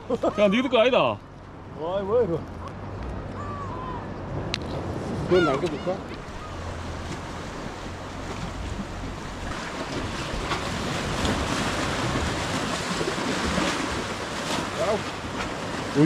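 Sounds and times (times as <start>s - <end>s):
waves washing on shore: 4.6s - 16.0s.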